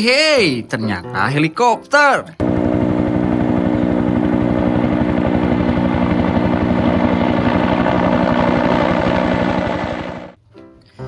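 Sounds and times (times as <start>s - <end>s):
helicopter engine drone: 2.4s - 10.4s
helicopter rotor chop: 2.4s - 10.4s.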